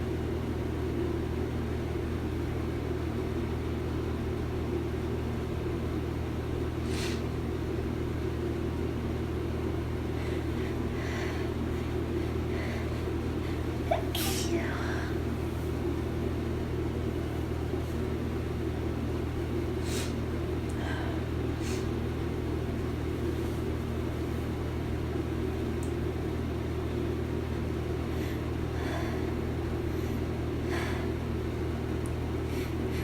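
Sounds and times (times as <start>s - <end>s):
low mechanical hum: 0.0s - 33.0s
faint sniffles: 6.8s - 7.3s.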